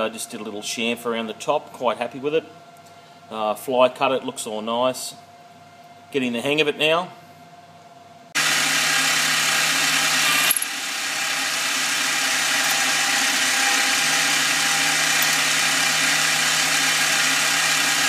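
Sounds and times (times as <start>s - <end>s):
workshop machine hissing whir: 8.4s - 18.0s.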